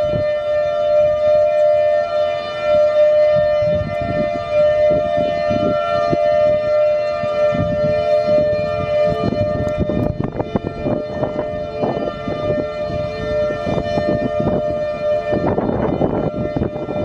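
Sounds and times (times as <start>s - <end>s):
warning siren steady tone: 0.0s - 17.0s.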